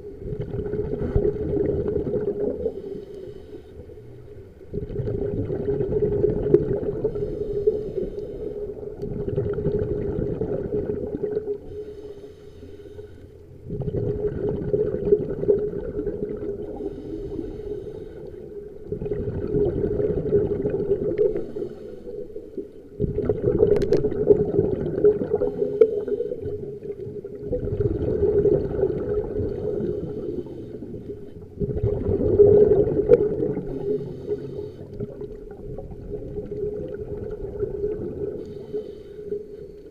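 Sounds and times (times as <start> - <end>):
bubbles gurgling: 0.0 - 3.0, 4.0 - 11.8, 13.5 - 39.9
diver breathing through regulator: 2.6 - 4.2, 6.8 - 8.9, 11.6 - 13.6, 16.6 - 18.7, 21.0 - 22.8, 25.4 - 26.8, 29.3 - 31.5, 33.0 - 35.3, 38.2 - 39.9.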